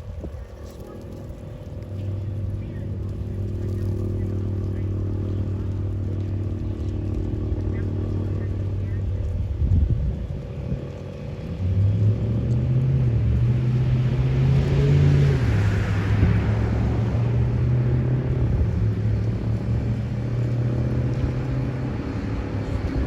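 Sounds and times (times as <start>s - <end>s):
car driving past: 11.4s - 23.0s.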